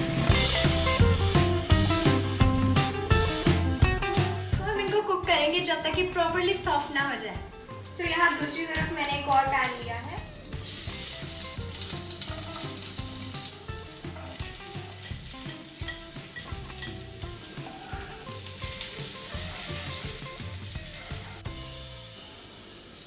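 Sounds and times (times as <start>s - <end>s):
food sizzling in a pan: 0.0s - 3.8s, 9.7s - 23.0s
music track: 0.0s - 22.8s.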